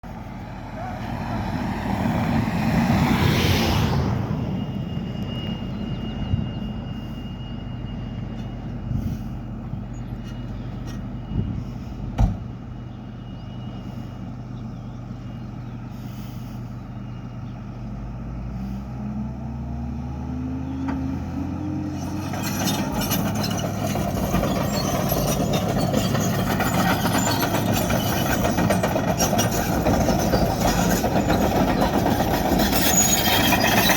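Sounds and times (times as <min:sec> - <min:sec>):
diesel engine running: 0:00.0 - 0:33.9
rattling working noise: 0:21.8 - 0:33.9.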